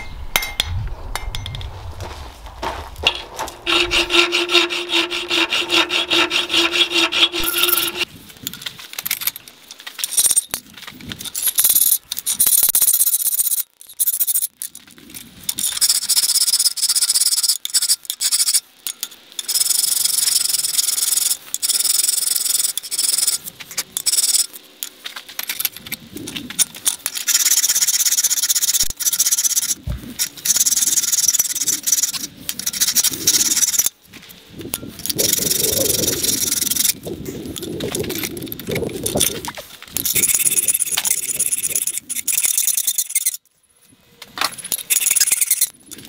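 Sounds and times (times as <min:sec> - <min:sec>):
hand scraping and rubbing: 0:01.0 - 0:08.1.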